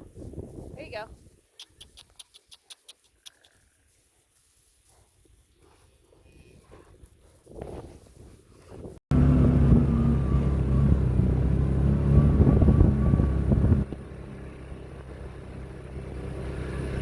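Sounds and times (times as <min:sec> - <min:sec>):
vehicle engine running: 0:09.1 - 0:17.0.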